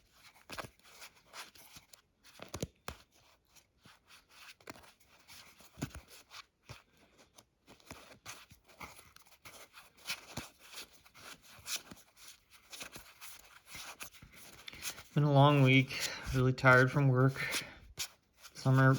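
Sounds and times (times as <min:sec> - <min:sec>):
trading cards clicking and rustling: 0:00.3 - 0:03.6, 0:04.2 - 0:18.9.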